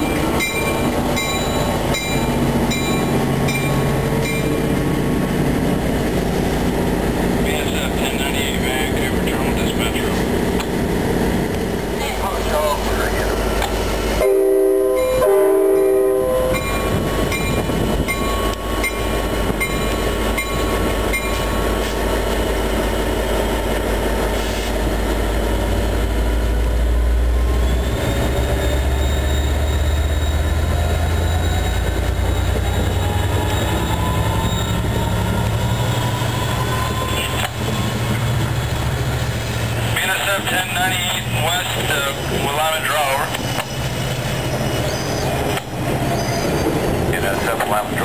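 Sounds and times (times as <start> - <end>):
locomotive engine drone: 0.0 - 48.0
rumble of train cars rolling: 0.0 - 48.0
diesel locomotive horn: 14.2 - 17.1, 29.0 - 39.0
faint wheel squeal: 27.6 - 39.0, 44.6 - 45.4, 46.1 - 46.6.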